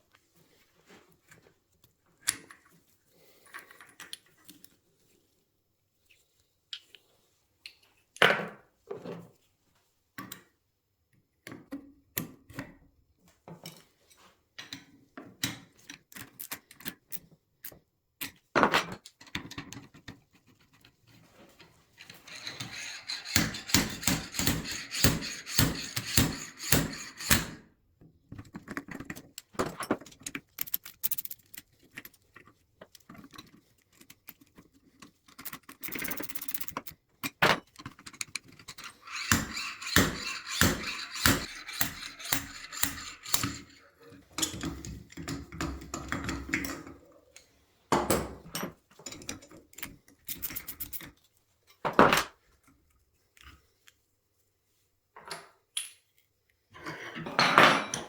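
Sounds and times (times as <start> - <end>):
small metal parts clinking: 22.0 - 27.5, 29.0 - 32.2, 35.3 - 37.0, 37.6 - 44.6, 49.1 - 51.1
metal scraping strokes: 22.0 - 27.6, 38.7 - 44.2.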